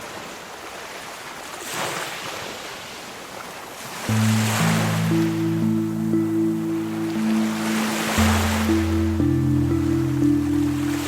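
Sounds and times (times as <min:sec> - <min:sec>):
ocean waves washing in: 0:00.0 - 0:11.0
soft ambient music: 0:04.1 - 0:11.0.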